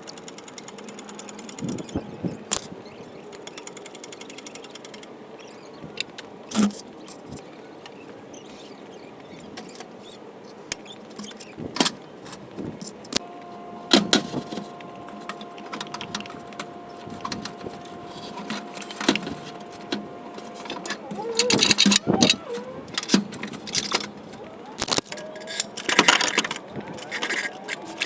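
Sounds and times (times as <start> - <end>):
two-tone whine: 13.1 - 25.4.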